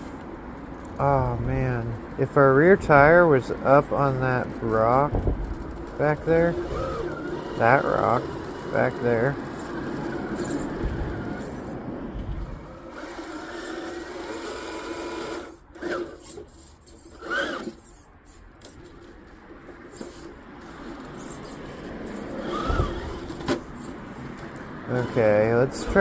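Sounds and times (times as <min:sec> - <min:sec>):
toy car motor whining: 0:03.4 - 0:11.8, 0:12.4 - 0:26.0.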